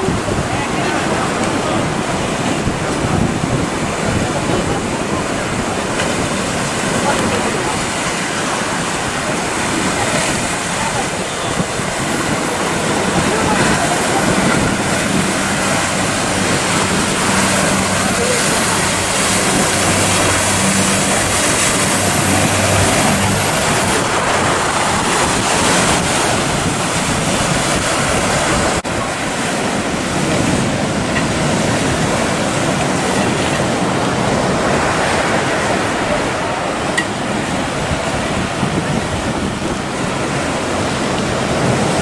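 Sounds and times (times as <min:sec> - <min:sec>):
boat engine droning: 0:00.0 - 0:42.0
surf and breaking waves: 0:00.0 - 0:42.0
wind buffeting microphone: 0:00.0 - 0:42.0.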